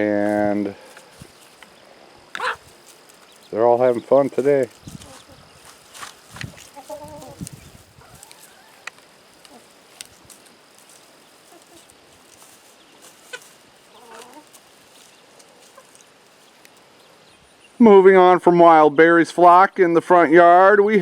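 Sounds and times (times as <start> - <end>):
chickens clucking: 0.0 - 17.8
wind rumble on microphone: 4.7 - 5.6, 6.2 - 8.3.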